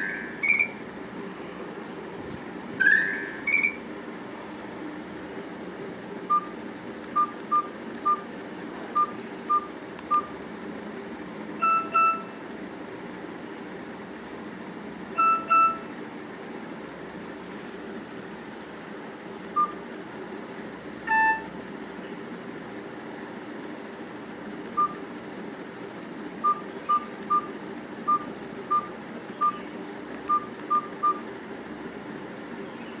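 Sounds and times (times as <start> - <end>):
low room hum: 0.0 - 33.0
phone alert tone: 0.4 - 0.8, 2.8 - 3.8, 11.6 - 12.3, 15.2 - 15.9, 21.1 - 21.5
phone keypad beeps: 0.4 - 0.8, 2.8 - 3.8, 6.3 - 6.6, 7.2 - 8.2, 9.0 - 10.3, 11.6 - 12.4, 15.2 - 15.9, 19.5 - 19.8, 21.1 - 21.5, 24.8 - 25.0, 26.4 - 27.5, 28.1 - 29.6, 30.3 - 31.2.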